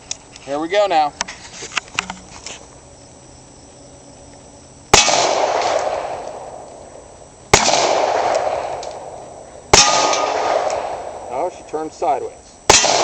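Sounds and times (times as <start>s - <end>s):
gunshots: 4.9s - 6.6s, 7.5s - 11.5s, 12.7s - 13.0s
gunshot echo: 4.9s - 6.7s, 7.5s - 11.5s, 12.7s - 13.0s.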